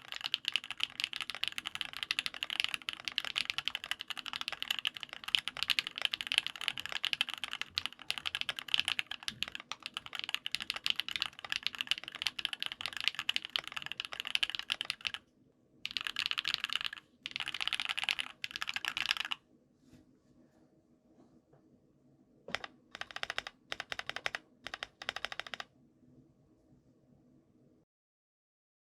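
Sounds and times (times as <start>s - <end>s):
keyboard typing: 0.0s - 15.2s, 15.9s - 19.4s, 22.5s - 25.7s.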